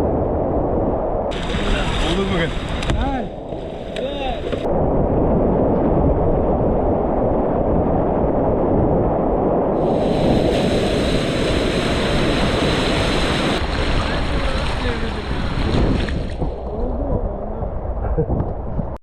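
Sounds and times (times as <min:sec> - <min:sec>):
river water rushing: 0:01.3 - 0:02.9, 0:09.8 - 0:16.7.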